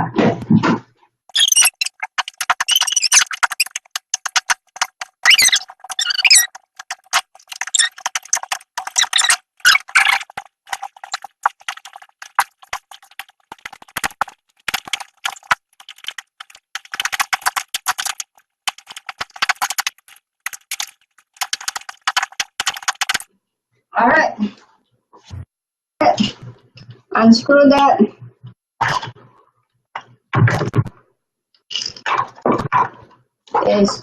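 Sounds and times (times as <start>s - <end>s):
irregular clicks and rattles: 1.3s - 23.3s.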